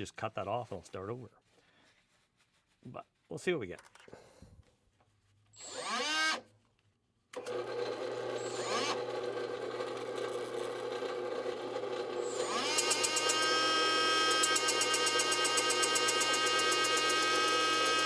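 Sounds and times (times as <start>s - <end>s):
power tool motor humming: 5.6s - 6.4s, 7.4s - 18.0s.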